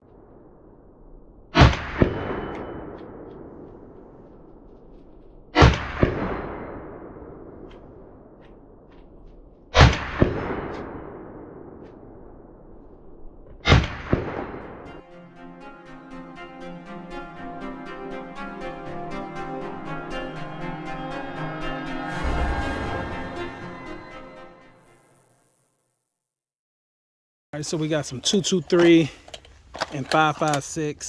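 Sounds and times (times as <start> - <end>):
music: 14.6 - 25.8.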